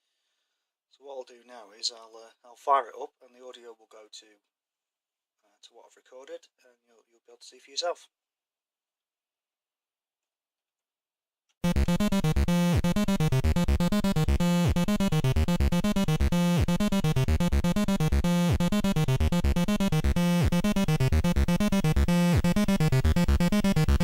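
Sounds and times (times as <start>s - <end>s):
chip synthesizer notes: 11.6s - 24.0s
steady bass note: 11.6s - 24.0s.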